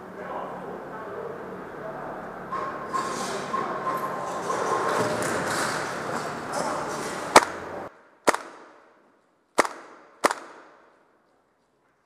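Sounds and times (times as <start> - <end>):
airsoft gun shots: 7.3 - 9.0, 9.6 - 10.9.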